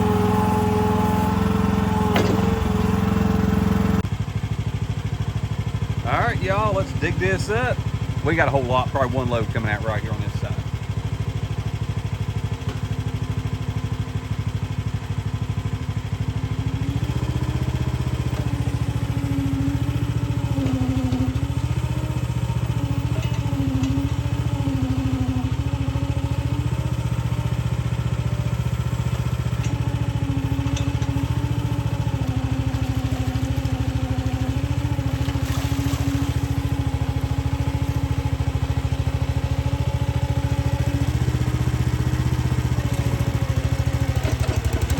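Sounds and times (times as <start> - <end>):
mini excavator engine running: 0.0 - 44.9.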